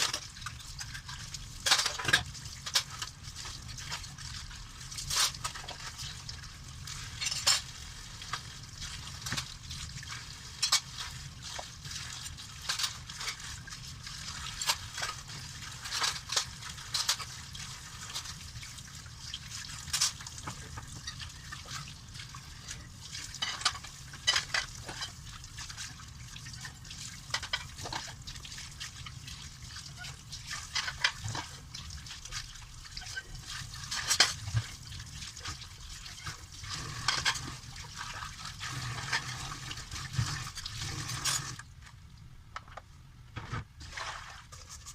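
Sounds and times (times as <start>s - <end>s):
water splashing in sink: 0.0s - 42.0s, 43.6s - 44.9s.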